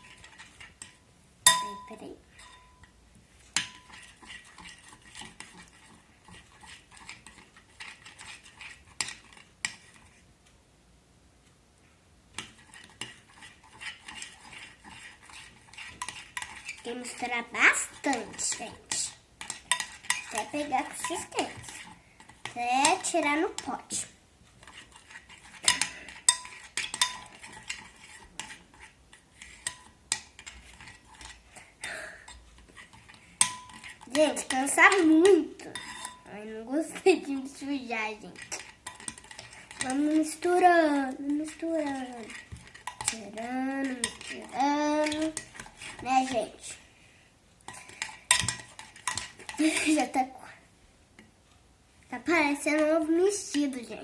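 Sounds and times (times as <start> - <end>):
utensil stirring slime: 0.0 - 10.4, 12.3 - 54.0
scraping and clinking on container: 32.8 - 36.3.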